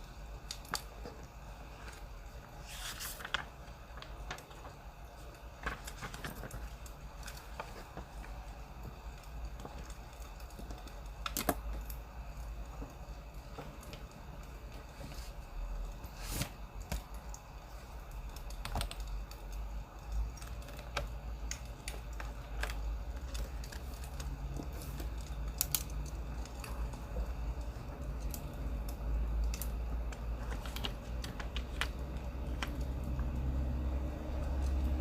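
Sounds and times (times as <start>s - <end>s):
fire low rumble: 0.0s - 35.0s
wood fire crackling: 0.0s - 35.0s.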